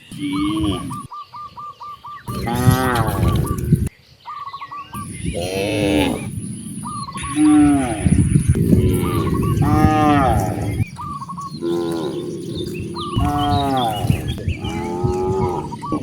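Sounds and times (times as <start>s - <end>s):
bird chirps: 0.0s - 16.0s
cattle mooing: 0.1s - 1.0s, 2.3s - 3.9s, 5.3s - 6.3s, 7.2s - 16.0s.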